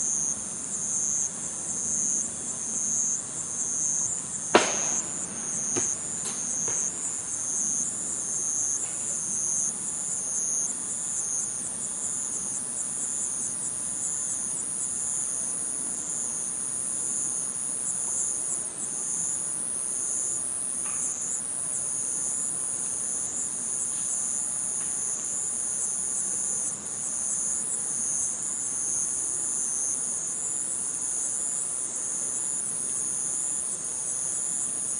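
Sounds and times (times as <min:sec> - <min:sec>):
crickets trilling: 0:00.0 - 0:34.9
sharp loud knocks: 0:04.6 - 0:06.9.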